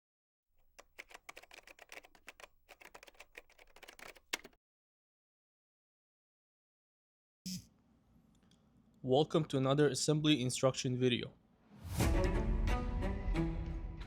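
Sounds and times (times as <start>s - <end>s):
sharp typing-like clicks: 0.6s - 4.6s.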